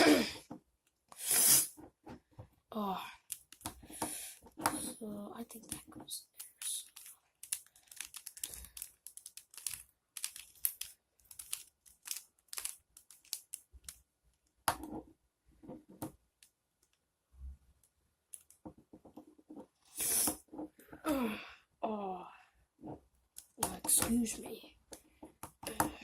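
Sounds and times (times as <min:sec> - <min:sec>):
puzzle cube plastic clicks: 0:03.3 - 0:14.9, 0:18.3 - 0:18.6.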